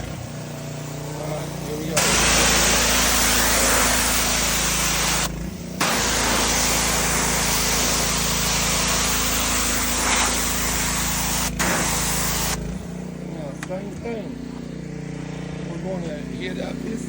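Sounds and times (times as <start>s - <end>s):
pressure washer engine running: 0.0s - 17.0s
spray wand hissing: 0.6s - 12.6s.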